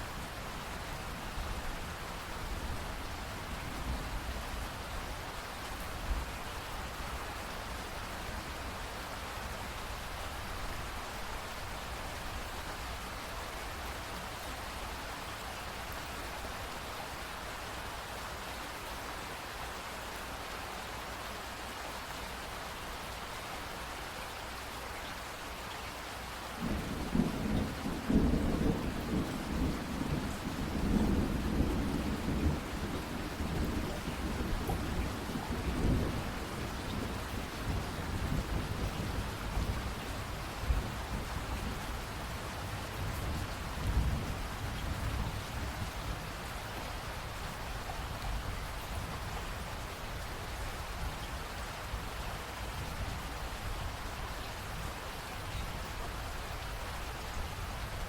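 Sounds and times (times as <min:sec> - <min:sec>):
steady rain falling: 0:00.0 - 0:58.0
thunder rumbling: 0:26.6 - 0:40.0.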